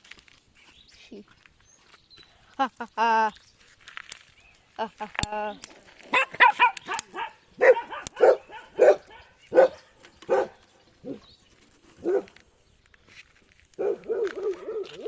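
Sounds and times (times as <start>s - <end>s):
dog barking: 6.1s - 11.2s, 12.0s - 12.3s, 13.8s - 15.0s.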